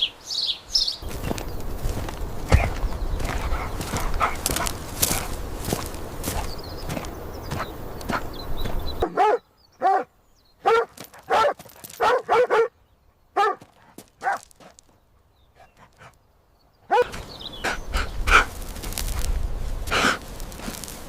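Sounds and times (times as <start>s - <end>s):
dog barking: 9.0s - 12.8s, 13.4s - 14.4s, 16.9s - 17.2s.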